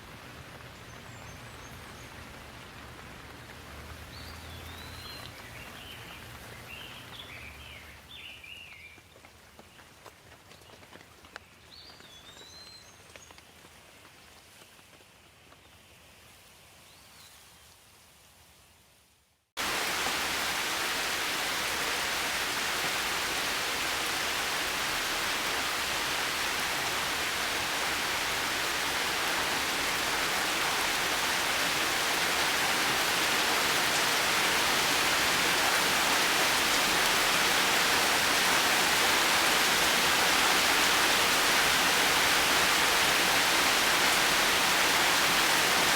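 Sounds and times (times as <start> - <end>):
heavy rain: 0.0 - 8.2, 19.6 - 45.9.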